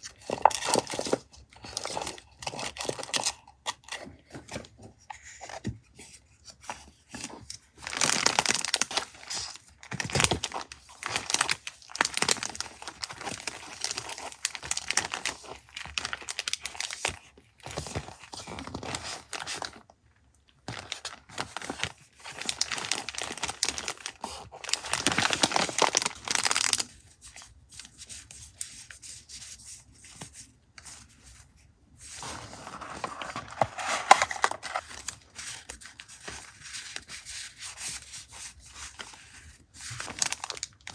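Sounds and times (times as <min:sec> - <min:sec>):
paper crinkling and tearing: 0:07.8 - 0:17.1, 0:20.8 - 0:26.9, 0:32.1 - 0:40.9.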